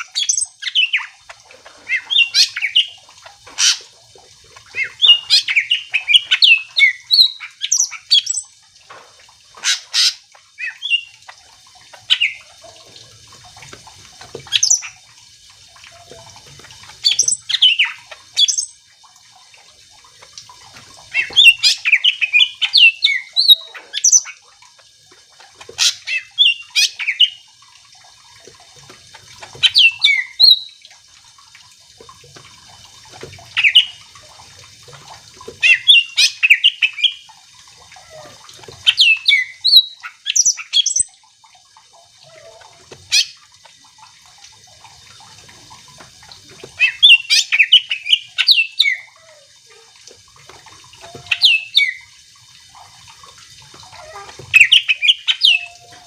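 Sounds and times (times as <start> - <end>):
bird whistling and chattering: 29.7 - 30.7.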